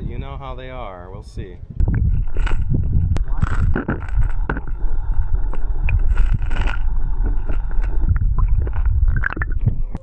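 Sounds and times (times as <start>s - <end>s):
strong wind buffeting microphone: 0.0s - 10.0s.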